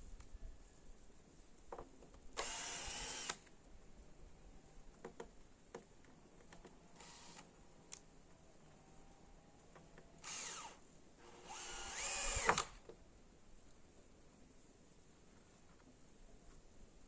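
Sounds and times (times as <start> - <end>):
power drill running: 2.4 - 3.4, 7.0 - 7.4, 10.2 - 12.8.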